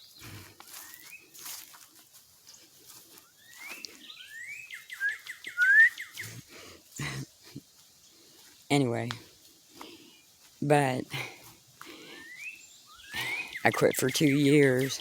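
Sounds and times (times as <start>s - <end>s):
light footsteps: 0.0s - 12.2s
person whistling short notes: 5.0s - 6.0s.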